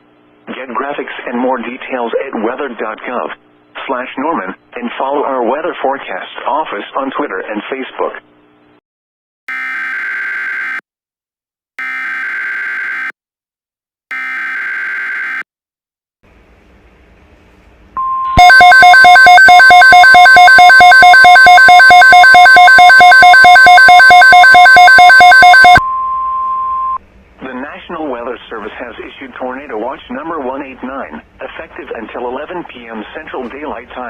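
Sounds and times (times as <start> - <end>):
steady alert tone: 18.0 - 25.8.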